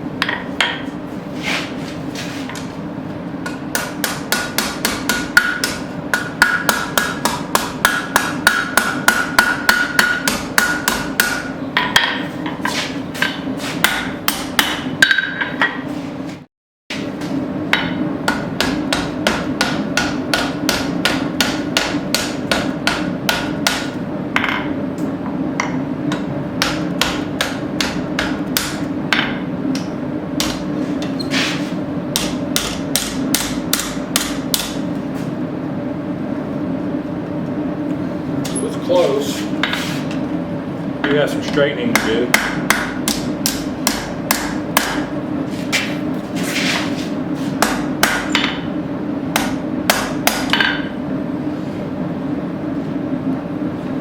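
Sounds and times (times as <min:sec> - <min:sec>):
steady low hum: 0:00.0 - 0:54.0
hammer striking steel on anvil: 0:03.4 - 0:12.6, 0:13.2 - 0:15.8, 0:16.9 - 0:24.8, 0:25.6 - 0:31.1, 0:32.1 - 0:34.8, 0:41.9 - 0:45.1, 0:47.6 - 0:48.7, 0:49.3 - 0:51.0.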